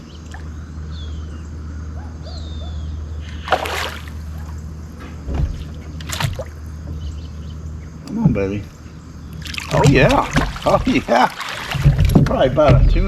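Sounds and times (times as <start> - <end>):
water splashing from thrashing fish: 3.4 - 4.7, 6.0 - 6.7, 9.3 - 12.3.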